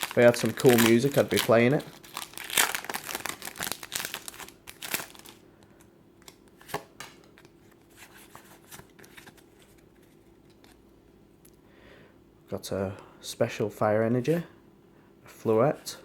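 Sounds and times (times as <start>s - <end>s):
foil wrapper crinkling: 0.0s - 5.4s.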